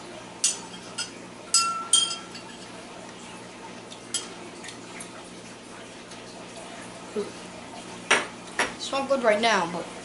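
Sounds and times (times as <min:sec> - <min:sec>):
spoon clinking against glass: 0:00.4 - 0:02.7.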